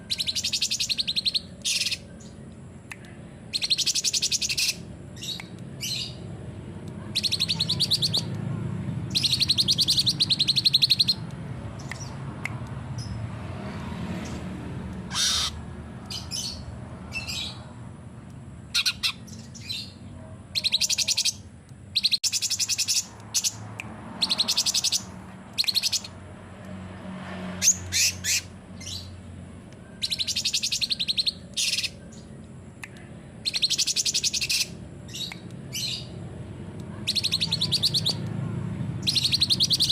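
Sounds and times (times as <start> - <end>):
songbird trilling: 0.0 - 2.4, 3.5 - 6.2, 7.1 - 8.4, 9.1 - 12.2, 15.1 - 17.6, 18.7 - 20.0, 20.6 - 26.2, 29.9 - 32.3, 33.4 - 36.1, 37.1 - 38.3, 39.0 - 39.9
bird chirps: 0.0 - 6.2, 7.0 - 8.4, 9.1 - 12.2, 15.1 - 17.7, 18.7 - 26.2, 29.8 - 36.2, 37.0 - 38.4, 39.0 - 39.9.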